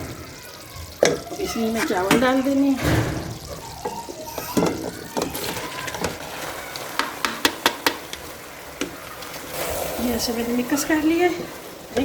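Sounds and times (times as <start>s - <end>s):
spoon knocking against pot: 1.0s - 6.2s, 7.0s - 8.2s.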